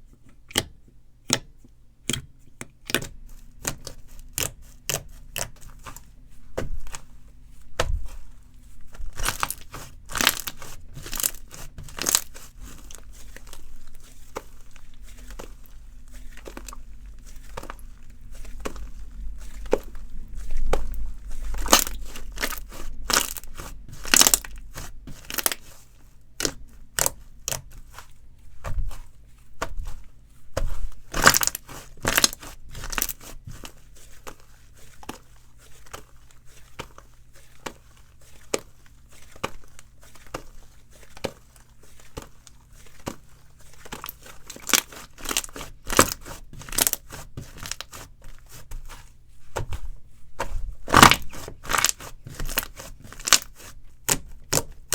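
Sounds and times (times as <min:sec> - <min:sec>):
slime popping and crackling: 0:09.1 - 0:14.0, 0:20.6 - 0:25.7, 0:31.0 - 0:33.6, 0:43.9 - 0:47.9, 0:50.8 - 0:54.9.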